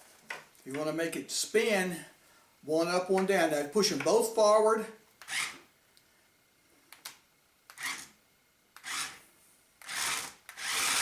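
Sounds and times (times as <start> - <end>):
toy car motors whirring: 5.2 - 5.6, 7.7 - 8.2, 8.8 - 9.2, 9.8 - 11.0.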